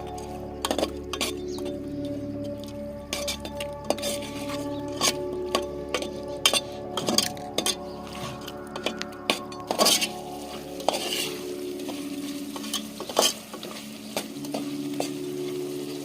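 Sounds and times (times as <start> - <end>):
clinks and knocks against metal: 0.0 - 10.2
metal spoon stirring in pan: 0.6 - 1.7, 3.1 - 16.0.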